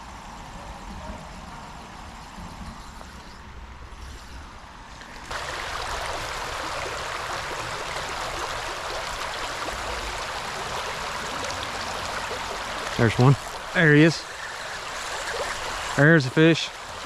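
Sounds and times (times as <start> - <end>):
river water rushing: 5.3 - 17.0.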